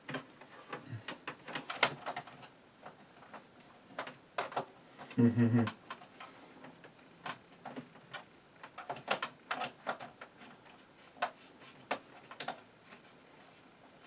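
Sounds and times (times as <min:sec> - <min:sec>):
computer hardware clicks and knocks: 0:04.0 - 0:04.7, 0:06.6 - 0:12.6.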